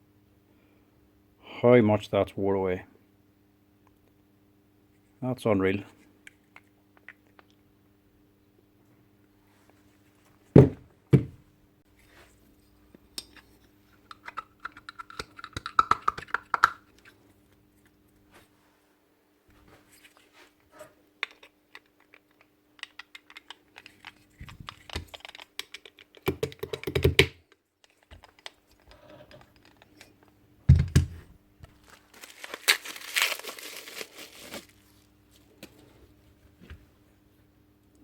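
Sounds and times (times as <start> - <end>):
rustling crinkling noise: 27.4 - 30.4, 31.6 - 37.0.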